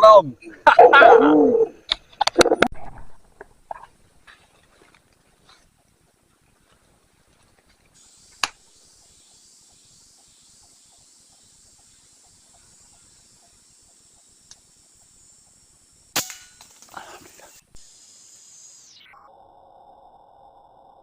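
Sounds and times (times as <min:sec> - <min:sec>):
woodland ambience: 0:00.0 - 0:21.0
insects buzzing high-pitched: 0:08.0 - 0:21.0
sharp click: 0:08.4 - 0:08.6.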